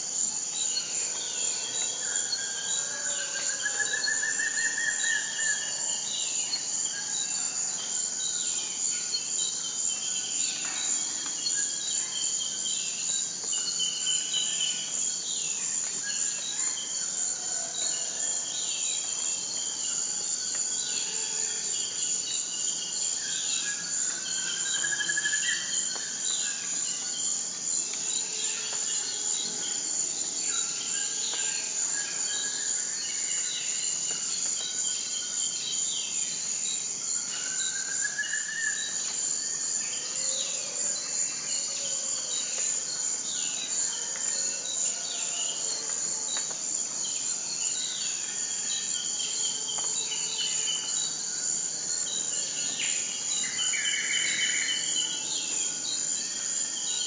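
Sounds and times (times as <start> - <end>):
high-pitched insect chorus: 0.0 - 57.0.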